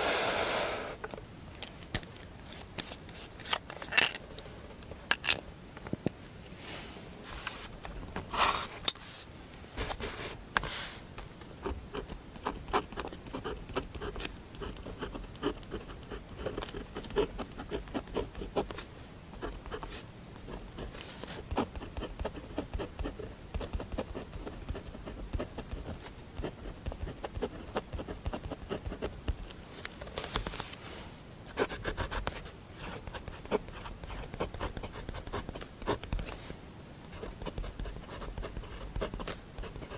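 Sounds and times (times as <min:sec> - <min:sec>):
pen nib scratching paper: 0:11.6 - 0:29.5, 0:31.5 - 0:36.4, 0:37.1 - 0:39.9.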